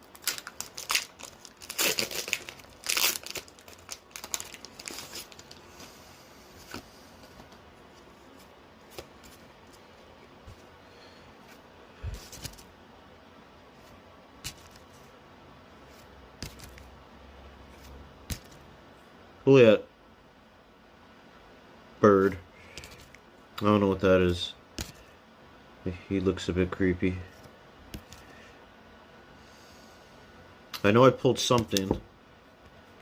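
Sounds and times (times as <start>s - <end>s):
foil wrapper crinkling and tearing: 0.0s - 5.6s.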